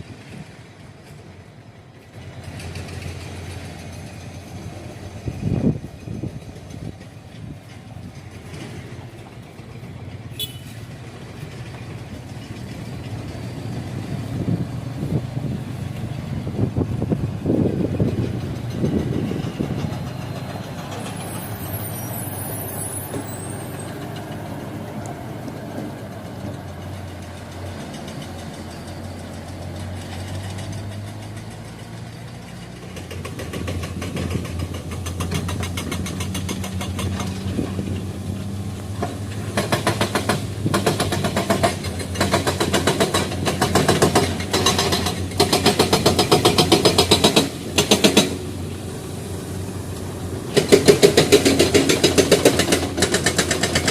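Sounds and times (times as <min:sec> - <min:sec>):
diesel engine running: 0:00.0 - 0:53.9
loud rapid clatter: 0:39.5 - 0:48.4, 0:50.5 - 0:53.9.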